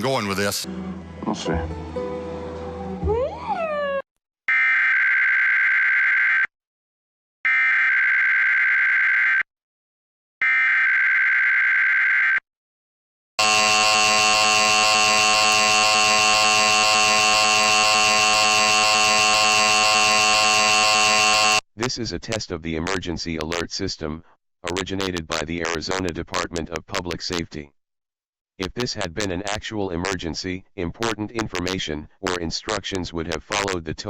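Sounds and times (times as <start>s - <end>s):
two-tone attention signal: 13.4s - 21.6s.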